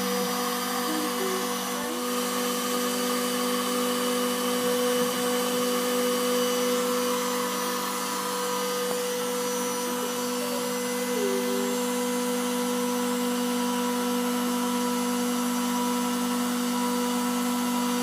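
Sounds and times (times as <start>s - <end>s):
cutting machine motor hum: 0.0s - 18.0s.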